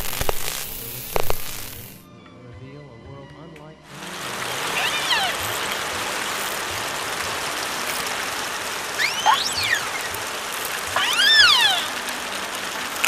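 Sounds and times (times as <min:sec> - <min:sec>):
underwater sea noise hiss: 0:00.0 - 0:02.0, 0:04.0 - 0:13.0
dolphin whistles: 0:04.8 - 0:05.7, 0:08.9 - 0:10.3, 0:10.9 - 0:12.0.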